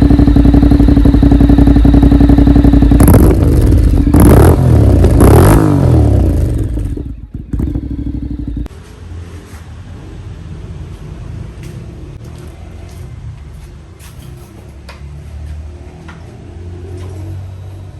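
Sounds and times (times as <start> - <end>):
motorcycle engine revving and idling: 0.0 - 17.9.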